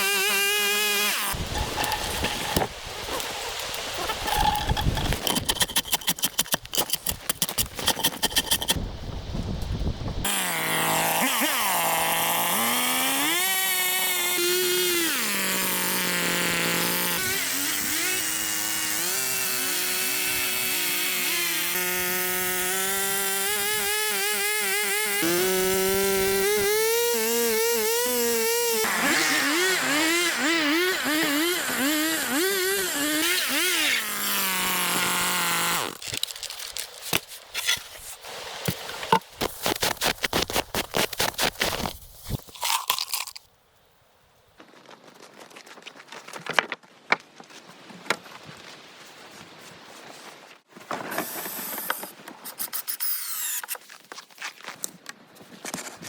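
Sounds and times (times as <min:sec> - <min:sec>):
chainsaw running: 0:10.3 - 0:36.0.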